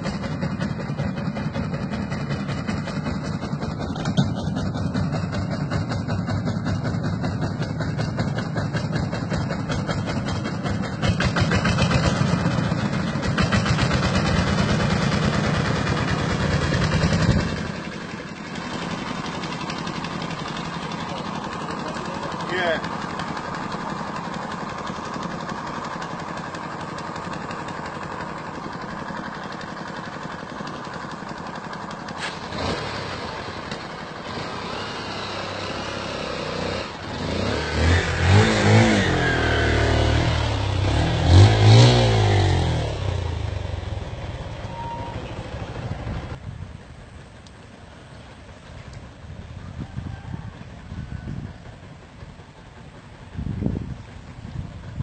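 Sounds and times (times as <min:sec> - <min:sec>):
motorcycle engine revving: 0:00.0 - 0:46.4.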